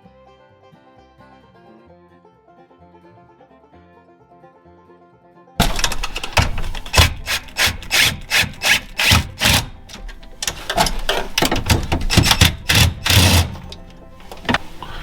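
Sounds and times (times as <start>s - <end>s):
hand tool rasping strokes: 5.6s - 15.0s.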